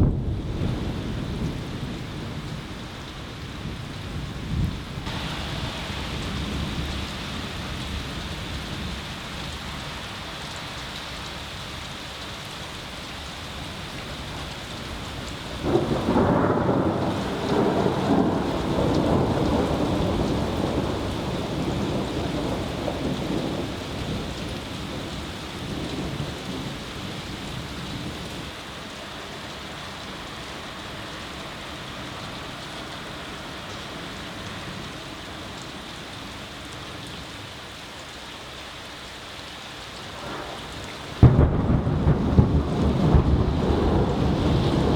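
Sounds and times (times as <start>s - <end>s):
thunder crack and rumble: 0.0s - 3.0s, 3.6s - 9.7s, 14.1s - 28.4s, 40.2s - 44.9s
steady rain falling: 0.0s - 44.9s.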